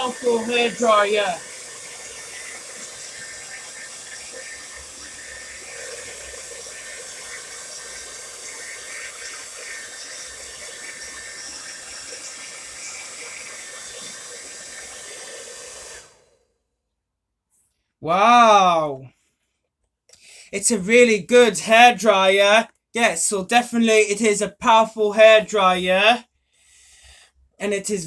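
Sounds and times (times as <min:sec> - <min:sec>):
hair dryer blowing air: 0:00.0 - 0:16.4.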